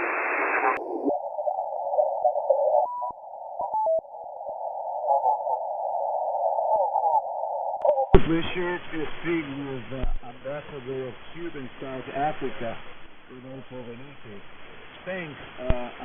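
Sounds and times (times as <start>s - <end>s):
radio carrier whistles: 0.0s - 8.6s
shortwave radio hiss and static: 0.0s - 16.0s.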